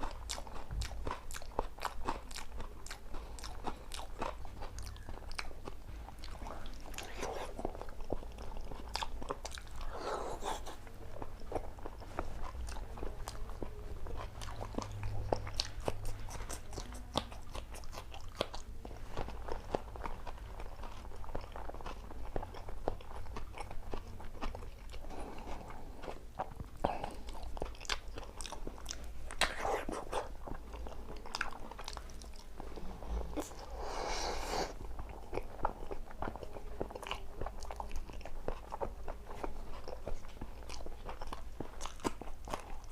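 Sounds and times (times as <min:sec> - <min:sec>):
person chewing with crunches: 0:00.0 - 0:42.9.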